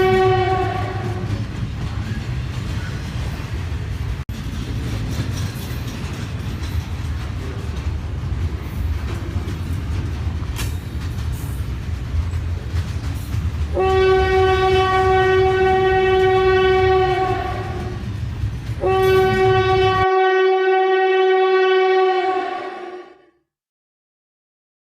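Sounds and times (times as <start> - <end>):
locomotive horn blasts: 0.0 - 1.3, 13.7 - 18.0, 18.8 - 23.3
train rumbling clickety-clack: 0.0 - 21.6.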